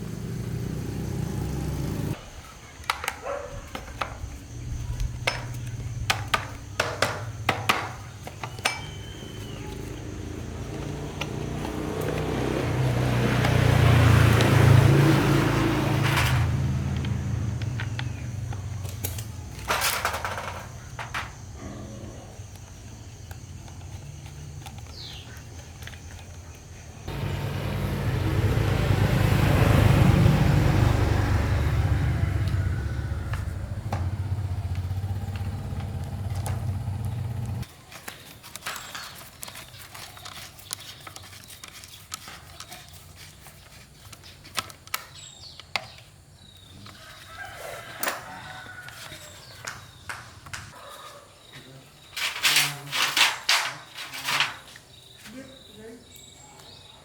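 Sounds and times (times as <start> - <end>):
small petrol engine running: 0.0 - 2.2, 4.4 - 21.3, 27.0 - 37.7.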